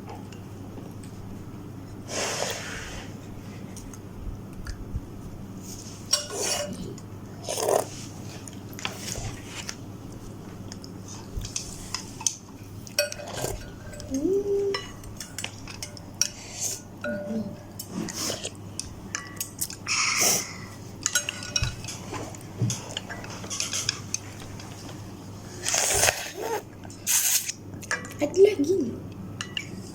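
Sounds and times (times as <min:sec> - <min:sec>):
cutlery clinking against bowl: 0:06.1 - 0:07.1, 0:11.4 - 0:19.8, 0:21.0 - 0:24.8, 0:29.4 - 0:29.8.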